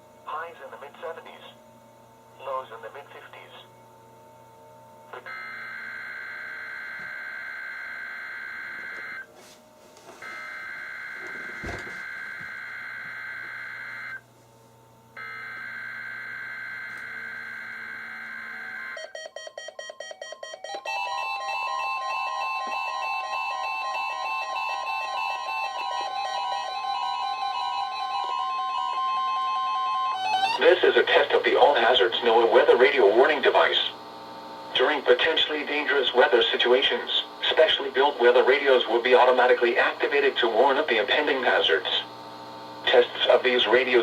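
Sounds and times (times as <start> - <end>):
weather radio alert beeps: 30.1 - 33.9.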